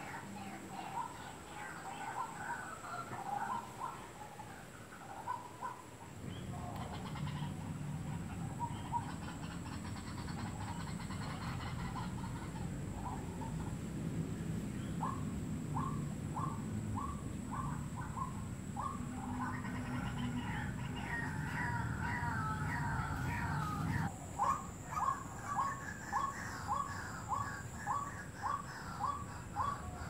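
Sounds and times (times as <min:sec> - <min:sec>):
bird calls: 0:00.0 - 0:30.0
low rumbling noise: 0:06.2 - 0:24.2.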